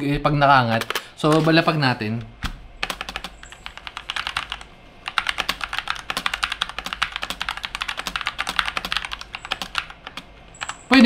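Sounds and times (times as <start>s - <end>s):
mechanical keyboard typing: 2.8s - 11.0s.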